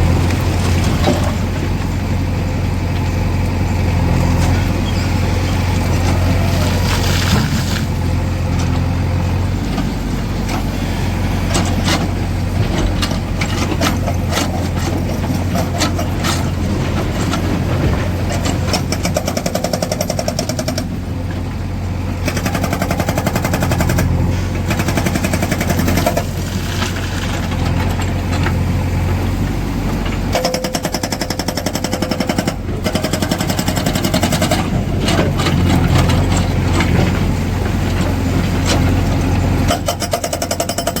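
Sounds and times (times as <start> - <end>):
diesel engine humming: 0.0 - 40.2
hydraulic rock breaker hammering stone: 11.5 - 21.0, 22.2 - 28.5, 30.2 - 37.9, 38.6 - 41.0.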